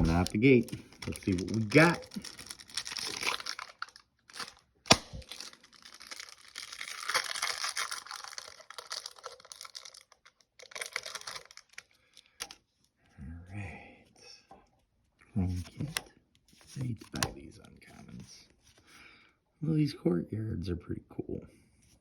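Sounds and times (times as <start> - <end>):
plastic foil wrapper crinkling: 0.0 - 12.6.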